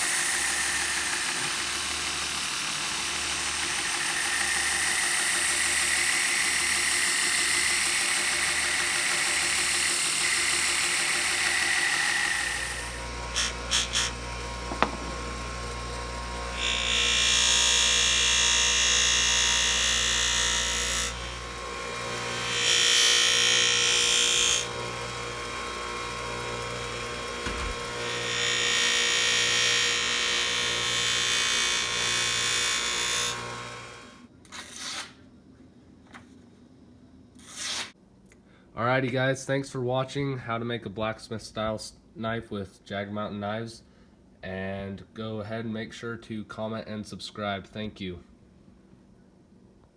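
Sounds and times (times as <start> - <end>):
power grinder sharpening knife: 0.0 - 34.2.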